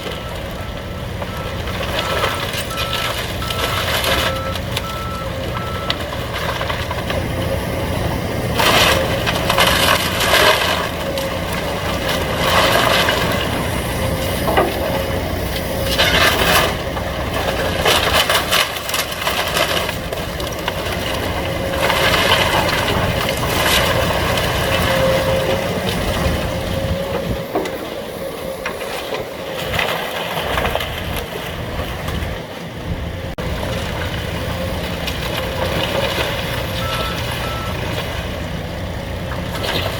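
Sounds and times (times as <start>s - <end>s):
excavator engines running: 0.0s - 39.9s
timber cracking and breaking: 8.6s - 13.6s.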